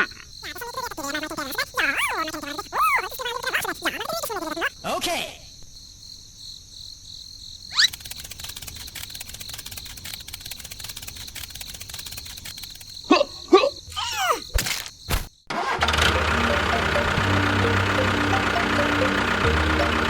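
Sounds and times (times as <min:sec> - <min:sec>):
rapid clicking: 0:07.8 - 0:13.1
engine starting and running: 0:07.9 - 0:12.9, 0:14.7 - 0:20.0.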